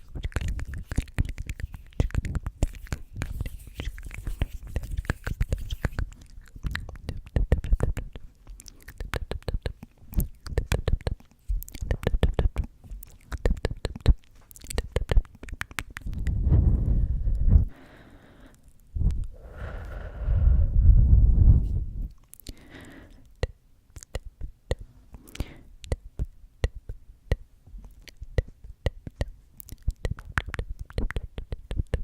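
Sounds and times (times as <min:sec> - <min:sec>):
mouth clicks: 0:00.0 - 0:16.4, 0:22.1 - 0:32.0
breath blown across microphone: 0:19.3 - 0:22.0.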